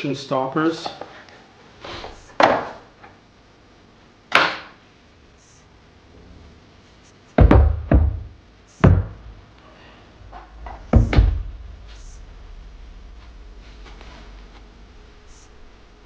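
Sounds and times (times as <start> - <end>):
heavy knocks and thumps: 7.4 - 16.0.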